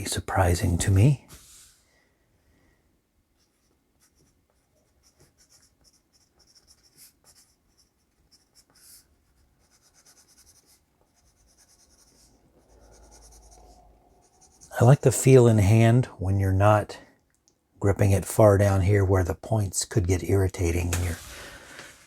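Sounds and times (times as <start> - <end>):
pencil scratching on paper: 3.4 - 15.0.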